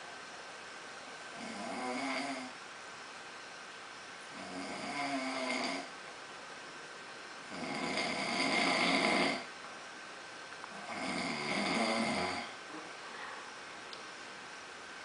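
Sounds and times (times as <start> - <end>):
man snoring loudly: 1.3 - 2.6, 4.3 - 5.9, 7.5 - 9.5, 10.8 - 12.6.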